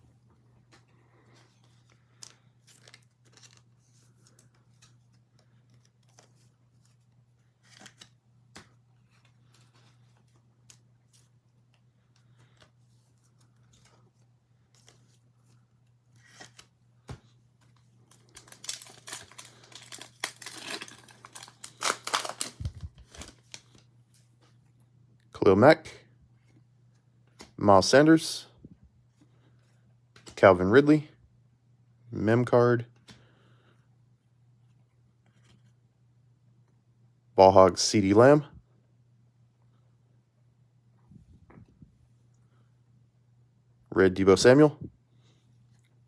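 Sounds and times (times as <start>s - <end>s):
foil card pack tearing and crinkling: 2.2s - 3.9s, 18.1s - 23.8s.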